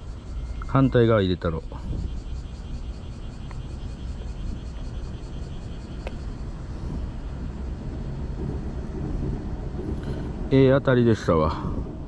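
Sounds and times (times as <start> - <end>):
low outdoor rumble: 0.0 - 12.0.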